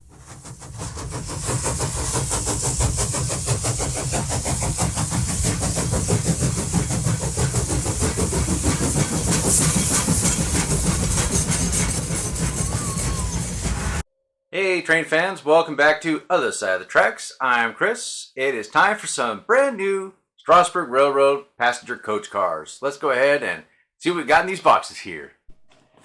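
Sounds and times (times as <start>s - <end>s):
steam hiss: 0.0s - 14.0s
steam locomotive chuffing: 0.0s - 14.0s.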